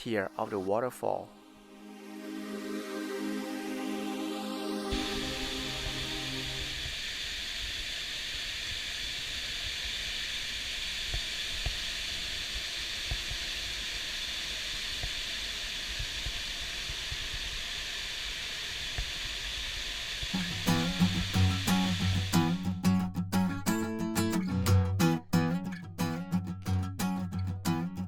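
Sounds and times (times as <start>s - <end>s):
waterfall rushing: 0.0s - 7.4s, 20.4s - 22.8s.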